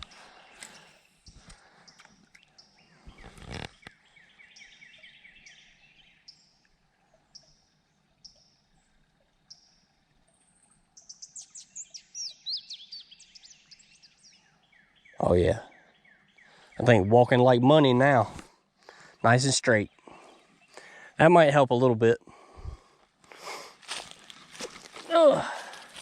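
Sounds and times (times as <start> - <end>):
brief rustle: 3.0 - 4.0
rapid high bird chirps: 11.0 - 15.2
bird trill: 11.0 - 17.1.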